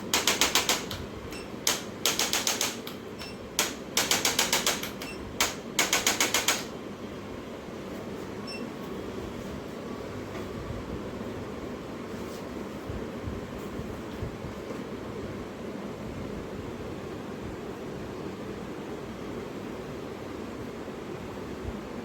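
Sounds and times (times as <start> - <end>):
sharp mechanical clicks: 0.0 - 6.8.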